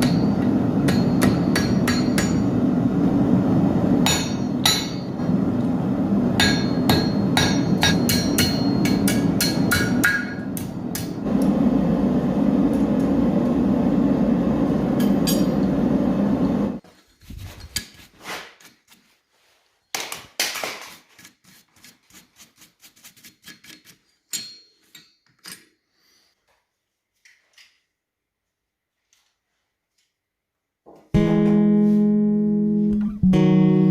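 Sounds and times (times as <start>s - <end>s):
hammer striking steel anvil: 0.0s - 2.6s, 4.0s - 5.3s, 6.4s - 11.2s, 15.0s - 15.8s
steady low hum: 0.0s - 16.8s.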